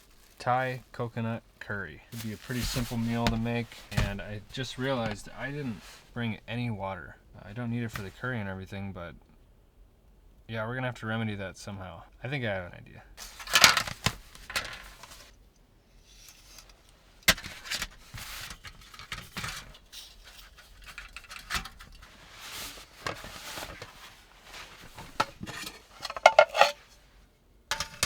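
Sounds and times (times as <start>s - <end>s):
rustling of gear: 0.0s - 1.0s, 2.1s - 6.2s, 13.2s - 15.4s, 16.2s - 27.1s
clicks and knocks: 24.9s - 26.8s, 27.7s - 28.0s
clinking: 25.2s - 26.9s.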